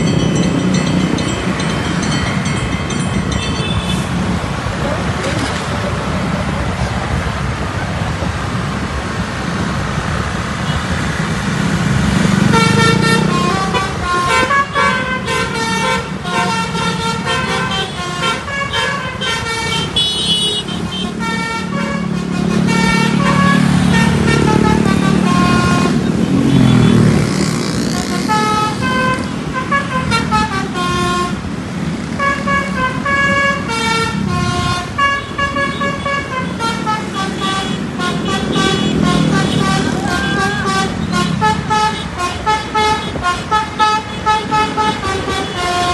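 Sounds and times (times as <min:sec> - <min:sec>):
musical bus horn: 0:12.4 - 0:27.0, 0:28.1 - 0:31.5, 0:32.1 - 0:45.9.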